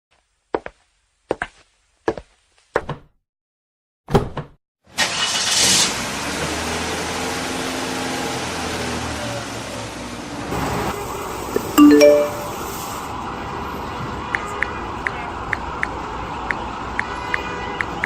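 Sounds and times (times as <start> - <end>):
engine starting and running: 5.0 - 5.8.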